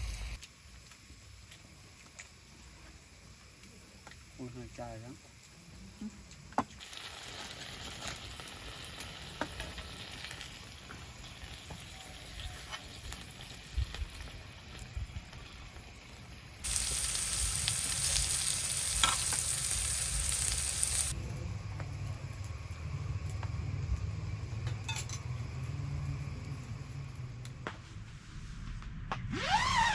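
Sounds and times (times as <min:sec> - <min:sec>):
food sizzling on a grill: 0:00.0 - 0:21.2.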